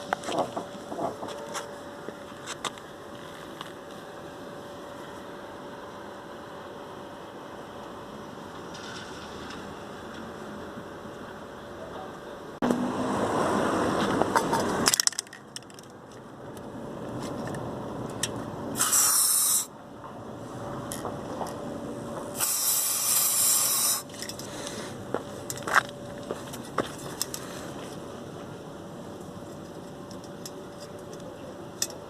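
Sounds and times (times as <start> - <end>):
aerosol spray can hissing: 18.8 - 19.7, 22.4 - 24.1.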